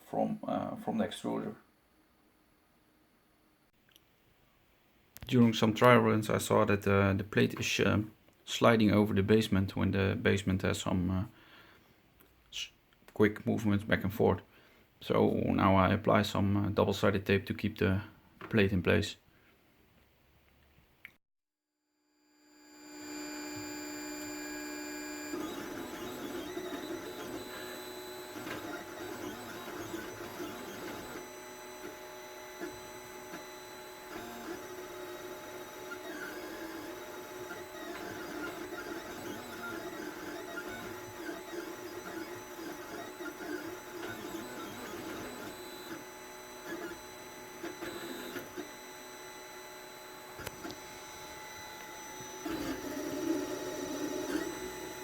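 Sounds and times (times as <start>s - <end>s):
stepper motors whirring: 22.8s - 55.0s.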